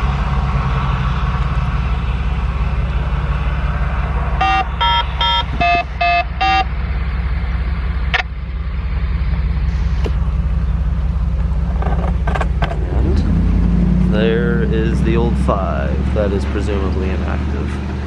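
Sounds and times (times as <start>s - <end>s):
vehicle engine idling: 0.0s - 18.0s
radio paging beeps: 4.4s - 6.7s.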